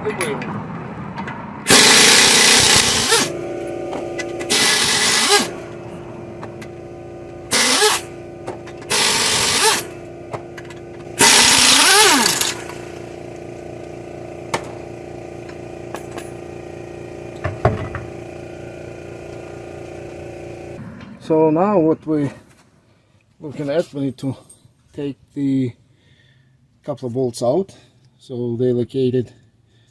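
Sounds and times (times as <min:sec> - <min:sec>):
power tool spinning: 0:01.7 - 0:20.8.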